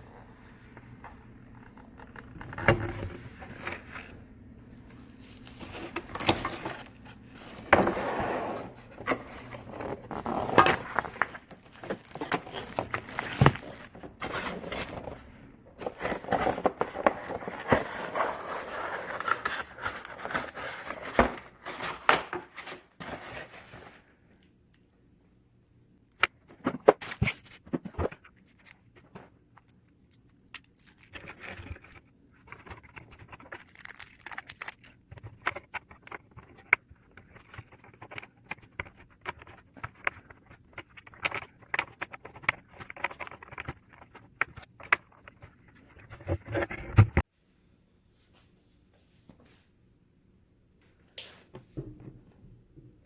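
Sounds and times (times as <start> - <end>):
packaging rustling: 8.8 - 24.1.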